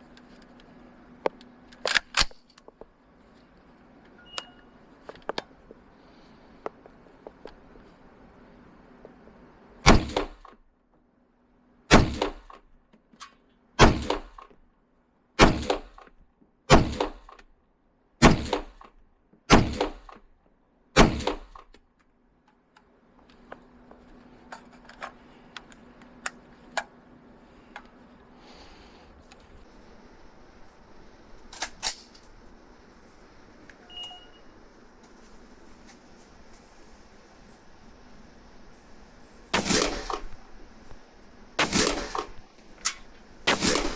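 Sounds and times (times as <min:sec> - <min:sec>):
airsoft gun shots: 0:09.8 - 0:10.4, 0:11.9 - 0:12.5, 0:13.8 - 0:14.4, 0:15.4 - 0:16.0, 0:16.7 - 0:17.3, 0:18.2 - 0:18.8, 0:19.5 - 0:20.1, 0:21.0 - 0:21.6, 0:39.6 - 0:40.5, 0:41.6 - 0:43.9.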